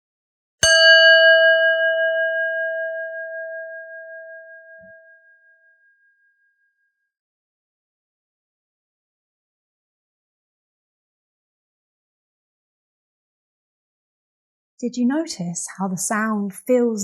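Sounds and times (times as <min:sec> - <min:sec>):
bell ringing: 0:00.6 - 0:04.8.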